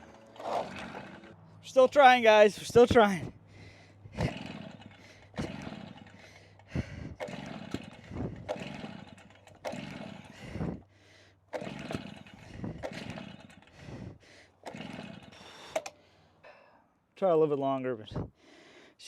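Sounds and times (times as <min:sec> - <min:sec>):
recoil cord pulls: 0:00.0 - 0:01.4, 0:04.1 - 0:10.8, 0:11.5 - 0:16.1
engine turning over: 0:00.0 - 0:16.2.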